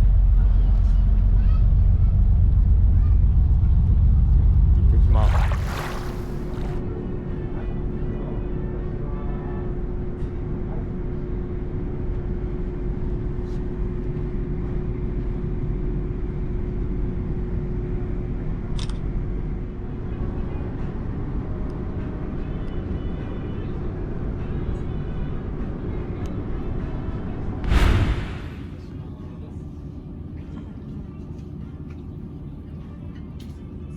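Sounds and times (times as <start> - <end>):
constant hum: 0.0 - 6.9
low rumble: 27.6 - 29.1.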